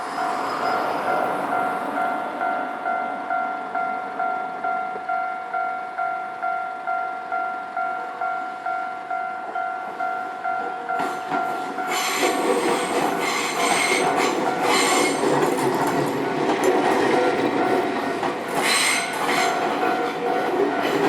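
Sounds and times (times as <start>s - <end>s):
train wheels squealing: 0.0s - 2.2s, 11.0s - 16.5s, 18.5s - 21.0s
level-crossing bell dinging: 0.0s - 21.0s
train passing: 0.0s - 21.0s.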